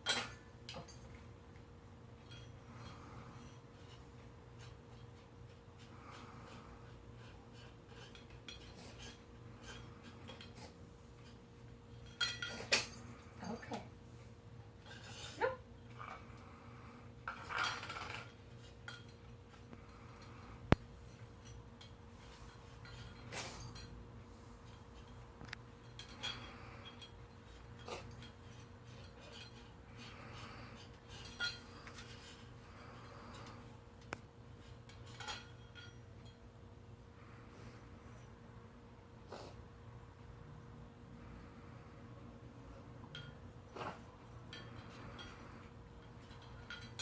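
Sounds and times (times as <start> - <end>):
light clinks on bowl: 34.9 - 36.4.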